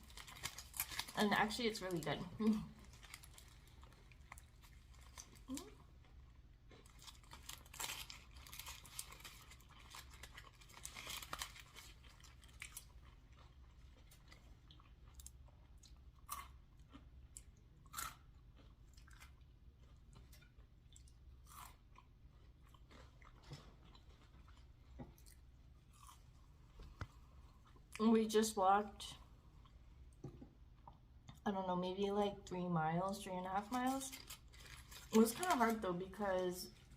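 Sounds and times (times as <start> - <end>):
chewing crunchy food: 2.3 - 28.0.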